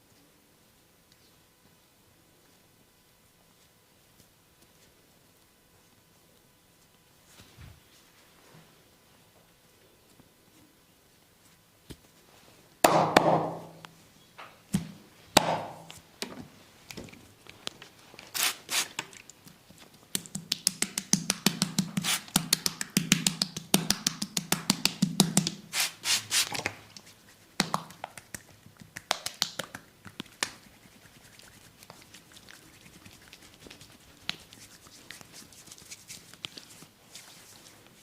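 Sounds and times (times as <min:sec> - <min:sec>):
hand slapping bare skin: 0:14.7 - 0:16.0, 0:20.1 - 0:32.0, 0:34.2 - 0:36.6
rapid tapping strokes on skin: 0:20.0 - 0:38.0.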